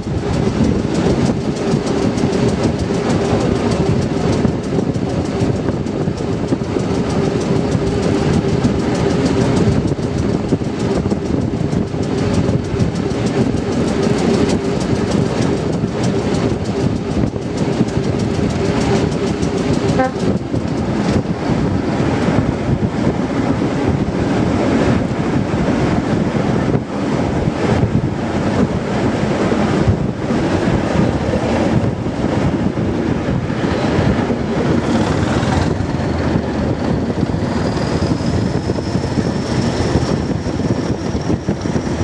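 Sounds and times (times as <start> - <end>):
steady whine: 0.0 - 33.5
diesel train engine running: 0.0 - 42.0
wheels clattering over rails: 0.0 - 42.0.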